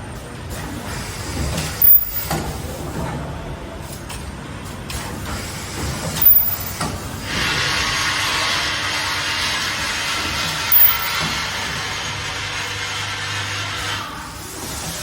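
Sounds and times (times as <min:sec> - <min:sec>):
welding machine mechanical noise: 0:00.5 - 0:02.8, 0:04.9 - 0:15.0
high-pitched weld bursts: 0:01.8 - 0:02.3, 0:06.2 - 0:08.2, 0:10.6 - 0:11.6.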